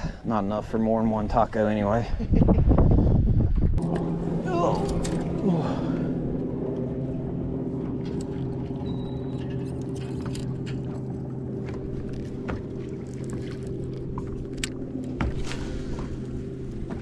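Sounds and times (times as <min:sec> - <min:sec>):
boat motor humming: 0:03.8 - 0:17.0.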